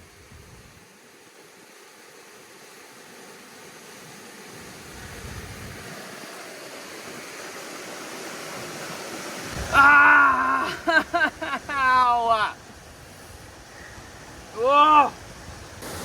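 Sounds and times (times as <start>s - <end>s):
waterfall rushing: 0.9s - 16.0s
woman crying out in pain: 9.7s - 11.0s.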